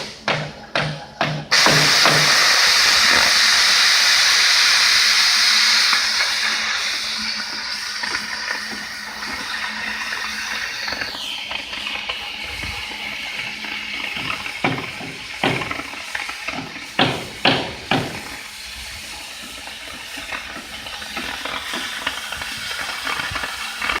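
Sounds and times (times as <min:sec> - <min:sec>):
plasma torch hissing: 0:01.5 - 0:24.0
sharp knocks: 0:16.6 - 0:18.2.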